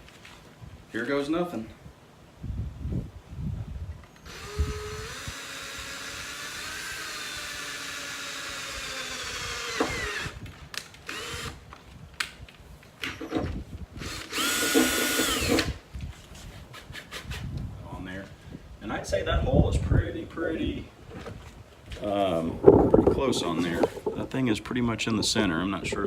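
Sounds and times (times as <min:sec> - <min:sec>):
power drill drilling into metal: 0:04.2 - 0:10.4, 0:11.1 - 0:11.6, 0:14.0 - 0:15.8.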